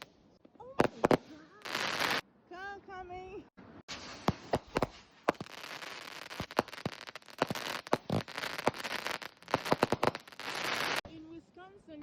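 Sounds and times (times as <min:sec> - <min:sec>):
fireworks bangs and cracks: 0:00.8 - 0:02.2, 0:03.9 - 0:11.0
steady hiss: 0:03.9 - 0:11.0.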